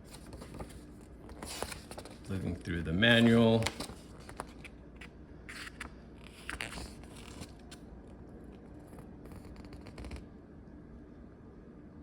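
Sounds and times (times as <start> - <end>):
paper pages turning: 0.0 - 7.8.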